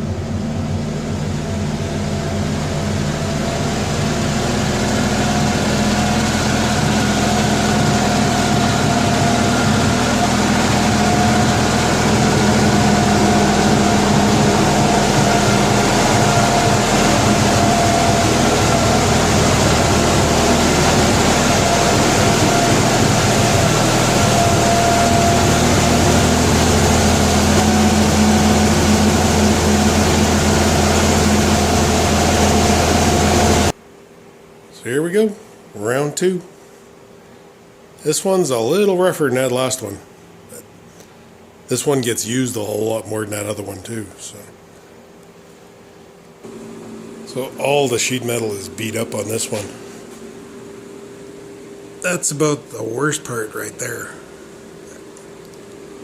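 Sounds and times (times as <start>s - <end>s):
tractor engine idling: 0.0s - 33.8s.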